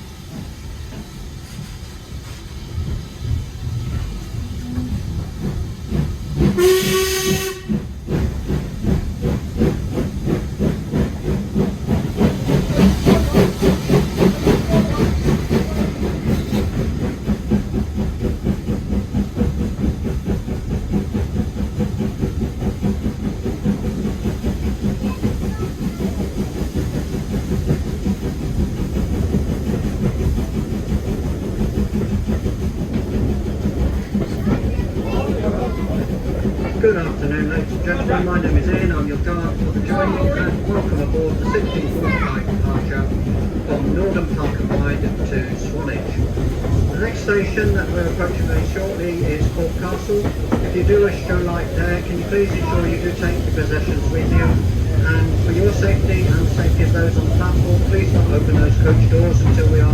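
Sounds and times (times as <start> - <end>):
train exhaust beats: 0.0 - 59.9
steam locomotive whistle: 6.6 - 7.9.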